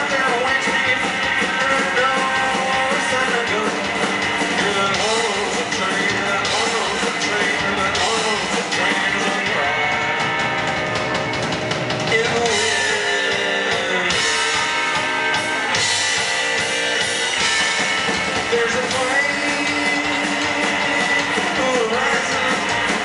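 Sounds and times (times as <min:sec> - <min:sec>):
person singing: 0:00.0 - 0:11.2, 0:12.0 - 0:16.0, 0:18.1 - 0:23.0
drums: 0:00.0 - 0:23.0
electric guitar: 0:00.0 - 0:23.0
upright bass: 0:00.0 - 0:23.0.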